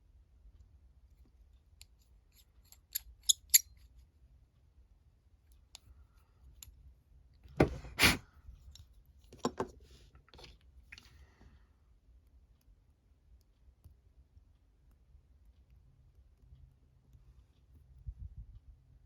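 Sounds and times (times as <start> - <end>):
small tools clicking and knocking: 1.8 - 3.8.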